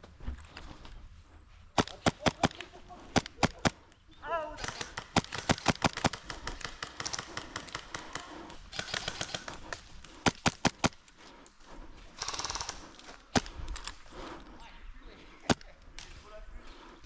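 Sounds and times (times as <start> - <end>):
airsoft gun shots: 1.8 - 3.8, 4.6 - 7.6.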